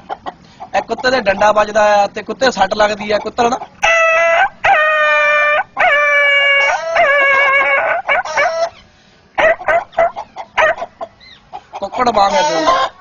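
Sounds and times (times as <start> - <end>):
man imitating dog yelping: 5.8 - 8.7, 12.2 - 12.9.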